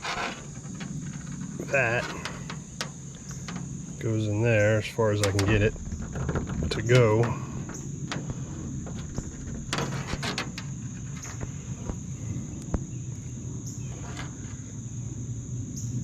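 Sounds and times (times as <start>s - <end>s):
clicks and rustles of parts handled: 0.0s - 12.0s
high insect trill: 0.0s - 16.0s.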